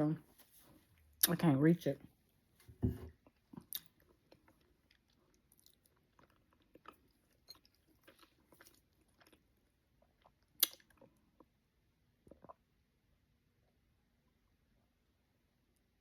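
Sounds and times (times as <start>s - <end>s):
wet chewing and lip smacks: 3.2s - 11.6s.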